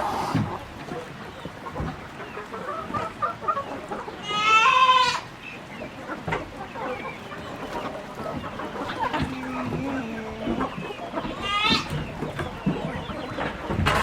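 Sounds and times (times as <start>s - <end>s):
loud drawn-out chicken call: 0.0s - 0.7s, 4.2s - 5.4s, 8.6s - 12.3s
chickens clucking: 0.0s - 14.0s.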